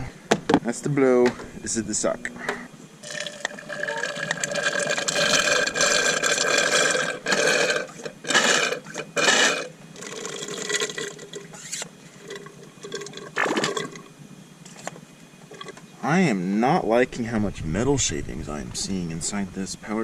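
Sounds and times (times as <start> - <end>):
fluid pouring into container: 3.0 - 8.0, 12.2 - 14.1
loud rattling noises: 3.0 - 15.8.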